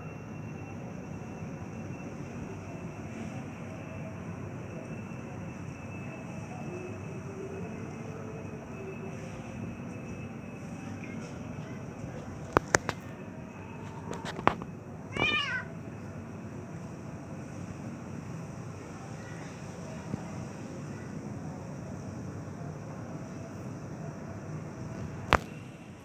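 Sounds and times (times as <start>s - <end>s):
cat meowing: 15.1s - 15.8s.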